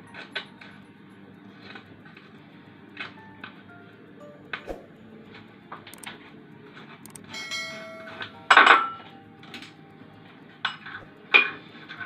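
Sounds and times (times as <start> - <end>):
ringing metallic note: 7.3 - 9.1.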